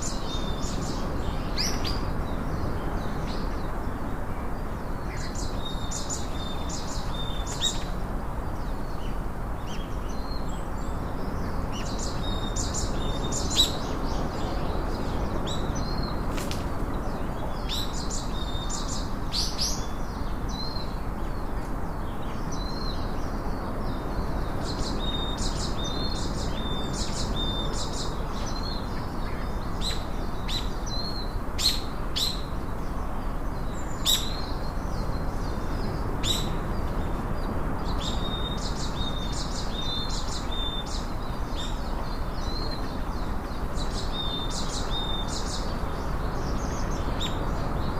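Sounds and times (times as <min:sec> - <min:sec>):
small birds chirping: 0:00.0 - 0:47.9.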